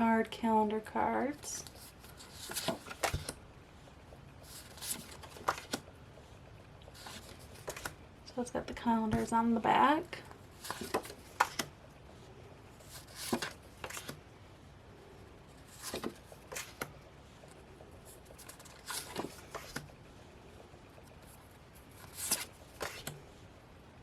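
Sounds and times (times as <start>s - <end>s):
cards rustling: 1.6s - 3.4s, 4.4s - 5.8s, 6.9s - 8.0s, 10.3s - 11.7s, 12.8s - 14.2s, 15.6s - 17.0s, 18.1s - 19.9s, 21.1s - 23.2s.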